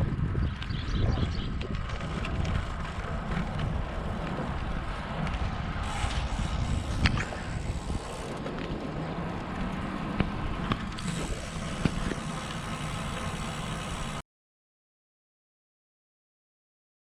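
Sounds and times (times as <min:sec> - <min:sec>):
wind buffeting microphone: 0:00.0 - 0:12.9
bike clicks: 0:00.0 - 0:14.2
bike tyres rolling on road: 0:00.0 - 0:14.2.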